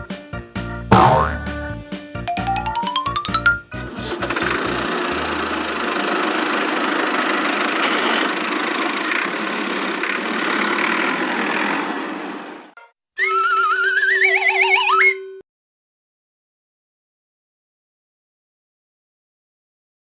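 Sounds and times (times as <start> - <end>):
cartoon vehicle engine running: 0.9 - 1.6, 2.3 - 12.3
rising musical glide: 2.3 - 3.8.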